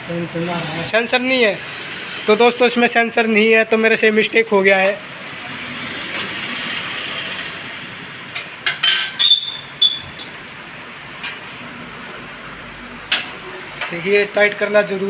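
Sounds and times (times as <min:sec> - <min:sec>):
metal tools clattering: 0:08.7 - 0:10.0
high ringing squeal: 0:08.8 - 0:10.3.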